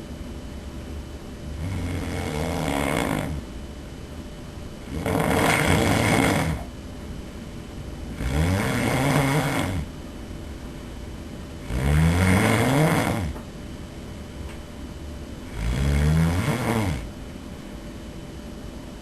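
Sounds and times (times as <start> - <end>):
man snoring loudly: 1.6 - 3.4, 4.8 - 6.7, 8.1 - 9.9, 11.6 - 13.4, 15.5 - 17.1.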